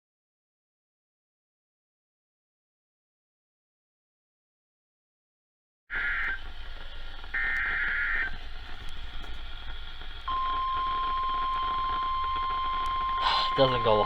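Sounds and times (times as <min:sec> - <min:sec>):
screeching digital data tones: 0:05.9 - 0:14.0
steady attention tone: 0:05.9 - 0:14.0.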